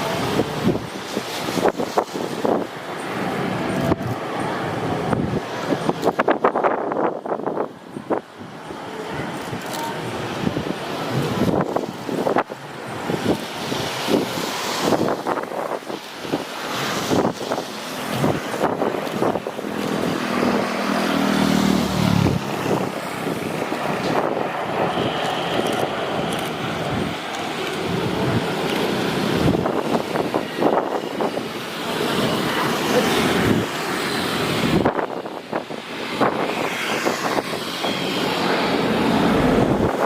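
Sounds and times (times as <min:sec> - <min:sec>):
engine rushing noise: 0:00.0 - 0:40.0
wind buffeting microphone: 0:00.0 - 0:40.0
pitched engine hum: 0:16.7 - 0:35.0, 0:36.2 - 0:40.0.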